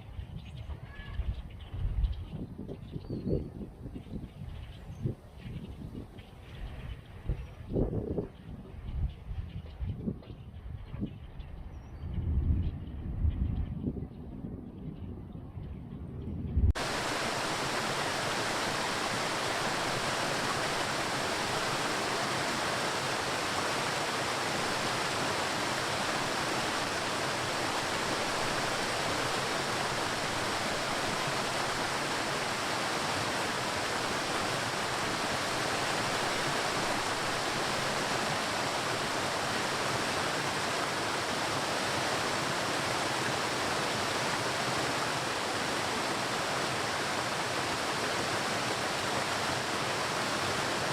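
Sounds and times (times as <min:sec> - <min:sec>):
waterfall rushing: 0:16.8 - 0:50.9.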